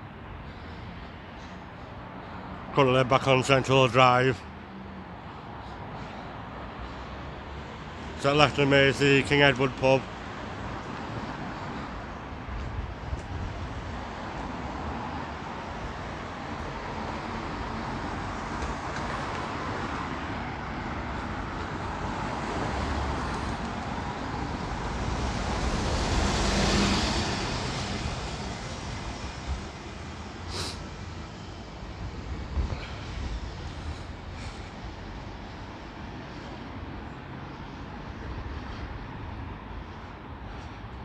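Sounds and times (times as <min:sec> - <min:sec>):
road traffic noise: 0:00.0 - 0:41.0
vehicle passing close by: 0:16.2 - 0:35.5.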